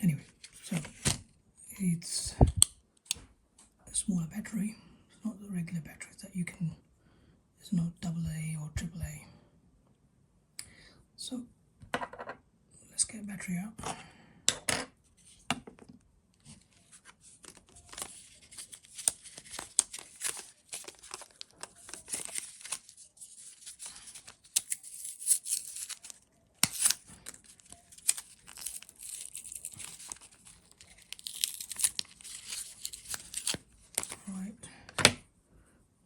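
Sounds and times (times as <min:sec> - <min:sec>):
battery packaging tearing and crinkling: 0:16.7 - 0:34.3.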